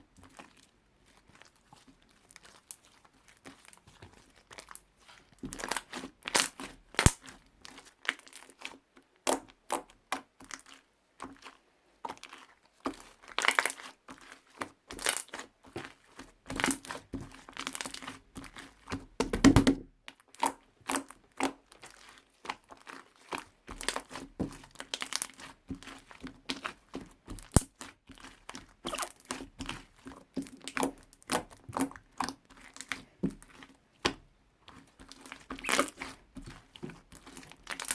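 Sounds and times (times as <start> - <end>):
slime squeezed with wet pops: 5.5 - 7.4, 27.3 - 36.3.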